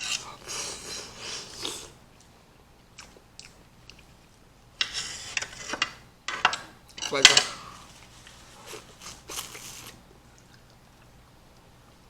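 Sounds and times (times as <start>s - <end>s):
wet slurping and chewing of fruit: 0.0s - 2.0s, 8.0s - 11.1s.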